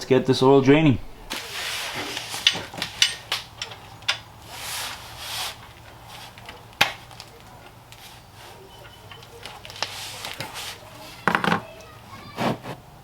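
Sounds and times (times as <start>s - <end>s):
scraping noise: 12.2s - 12.8s.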